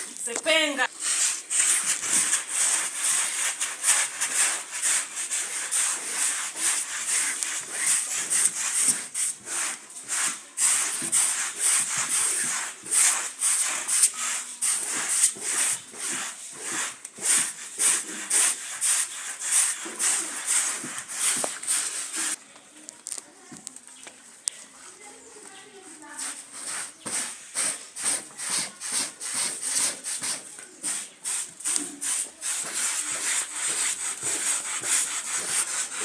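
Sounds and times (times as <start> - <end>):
carpet scrubbing strokes: 0.5 - 22.4, 26.0 - 36.0.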